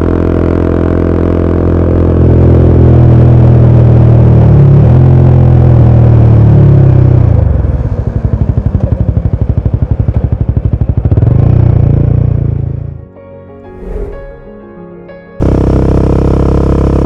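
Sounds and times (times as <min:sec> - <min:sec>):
motorcycle engine running: 0:00.0 - 0:12.9
music: 0:12.6 - 0:16.1.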